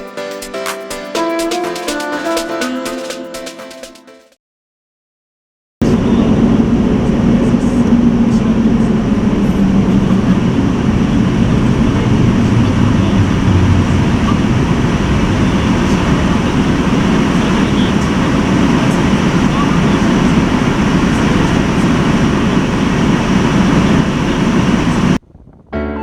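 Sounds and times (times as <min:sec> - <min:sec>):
vehicle running hum and hiss: 0:05.8 - 0:25.2.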